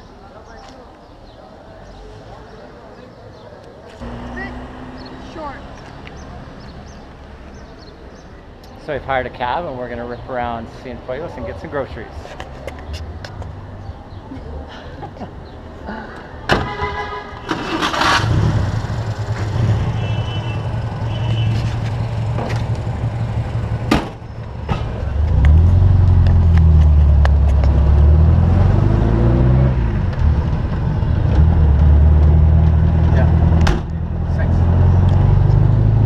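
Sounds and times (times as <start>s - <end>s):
car engine humming: 4.0s - 7.3s.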